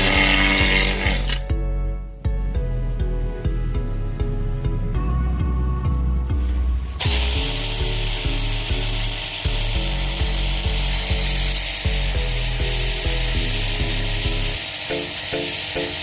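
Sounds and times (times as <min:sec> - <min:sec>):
background music with beat: 0:00.0 - 0:16.0
pressure washer water jet hissing: 0:07.0 - 0:16.0.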